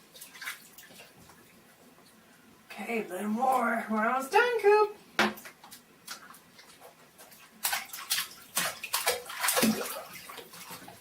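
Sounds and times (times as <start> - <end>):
water splashing in baby bath: 0.0 - 1.5, 6.0 - 11.0.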